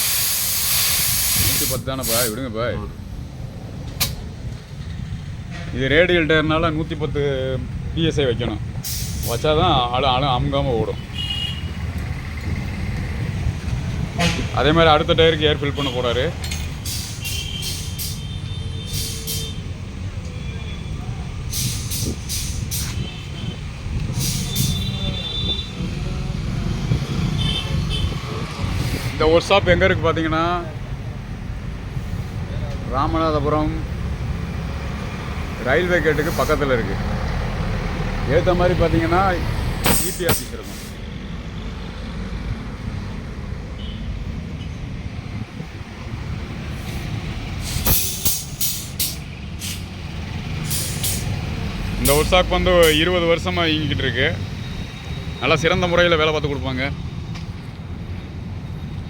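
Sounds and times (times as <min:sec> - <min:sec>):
compressed air hissing in bursts: 0:00.0 - 0:02.4, 0:08.8 - 0:09.5, 0:16.8 - 0:19.6, 0:21.5 - 0:23.5, 0:24.1 - 0:25.0, 0:28.7 - 0:29.2, 0:39.8 - 0:41.0, 0:46.6 - 0:50.0, 0:50.6 - 0:53.0.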